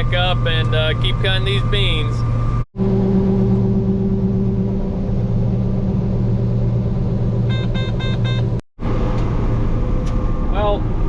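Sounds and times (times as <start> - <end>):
combine harvester engine drone: 0.0 - 11.0
electronic warning beeps: 7.5 - 8.6.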